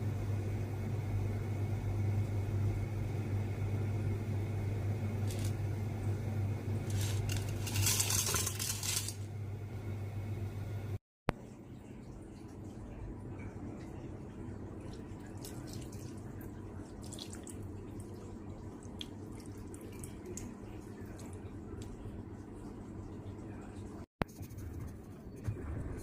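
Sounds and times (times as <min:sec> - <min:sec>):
low room hum: 0:00.0 - 0:26.0.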